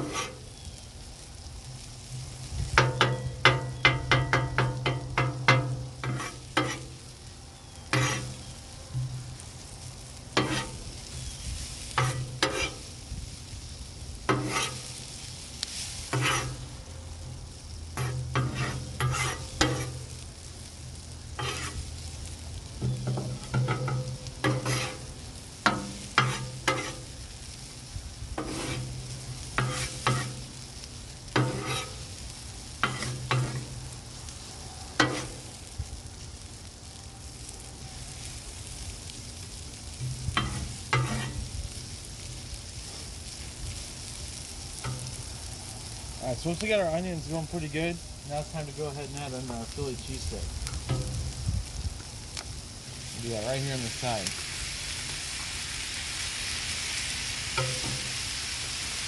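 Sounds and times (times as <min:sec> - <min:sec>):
metal spatula scraping steel plate: 0:00.0 - 0:00.4, 0:02.9 - 0:07.0, 0:07.9 - 0:08.5, 0:10.4 - 0:10.8, 0:12.0 - 0:12.9, 0:14.3 - 0:14.9, 0:16.1 - 0:16.6, 0:18.0 - 0:20.0, 0:21.4 - 0:21.8, 0:22.8 - 0:25.1, 0:25.7 - 0:27.1, 0:28.4 - 0:30.4, 0:31.4 - 0:32.0, 0:32.8 - 0:33.7, 0:35.0 - 0:35.4, 0:40.4 - 0:41.4, 0:57.6 - 0:58.0
onions sizzling on a griddle: 0:00.0 - 0:59.0.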